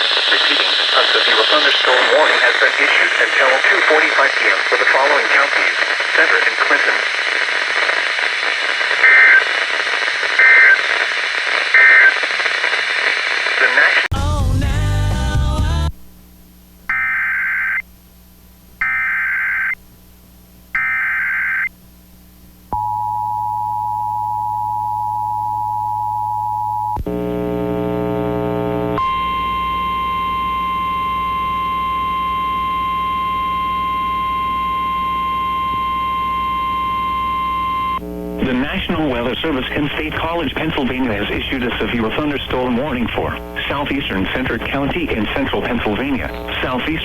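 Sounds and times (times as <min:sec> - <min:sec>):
jumble of tones: 0:22.8 - 0:47.0.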